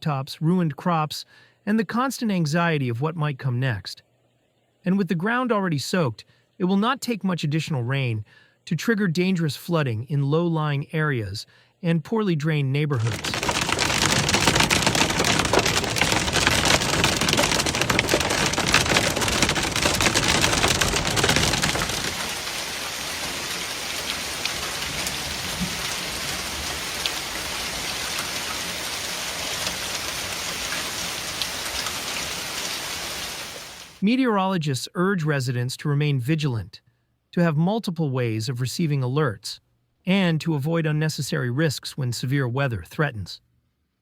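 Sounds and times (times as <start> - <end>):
hail and rain pelting down: 13.0 - 34.0
steady rain hiss: 13.0 - 34.0.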